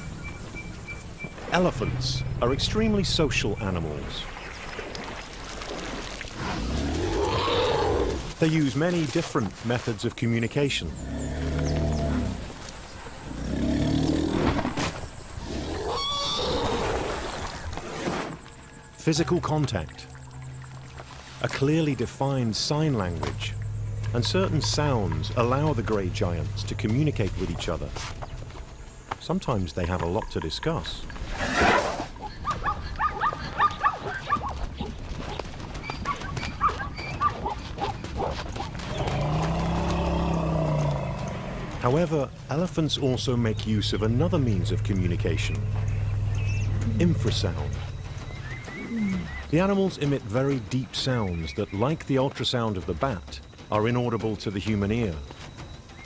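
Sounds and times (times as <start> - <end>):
elephants calling: 6.4 - 9.2, 10.7 - 52.0.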